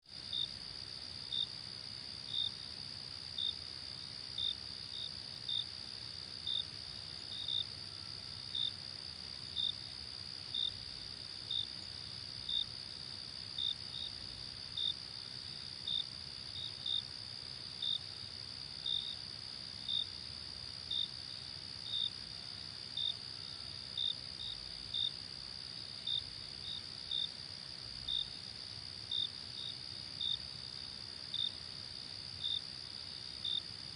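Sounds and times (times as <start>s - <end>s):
crickets chirping: 0.1s - 33.9s.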